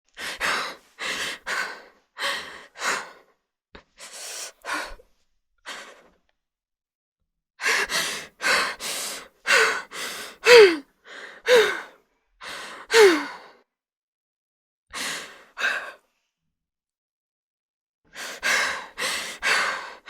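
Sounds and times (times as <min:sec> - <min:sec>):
woman breathing shakily: 0:07.6 - 0:10.8, 0:12.4 - 0:13.4
woman whimpering: 0:10.4 - 0:10.8.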